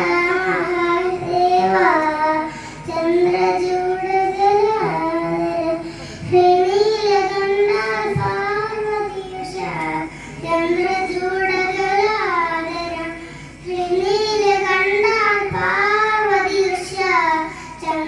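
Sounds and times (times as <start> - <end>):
child singing held notes: 0.0 - 18.0
child breathing: 2.5 - 2.9, 5.8 - 6.4, 10.0 - 10.4.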